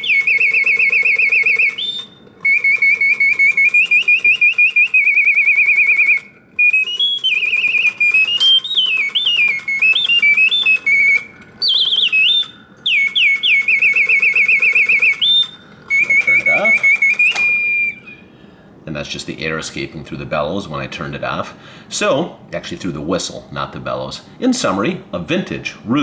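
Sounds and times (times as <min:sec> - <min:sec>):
mechanical bird whistling trills: 0:00.0 - 0:18.4.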